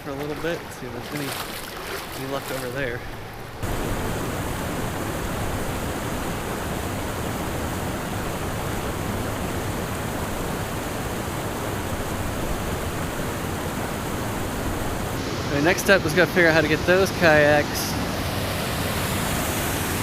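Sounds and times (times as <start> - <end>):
river water pouring over rapids: 0.0 - 20.0.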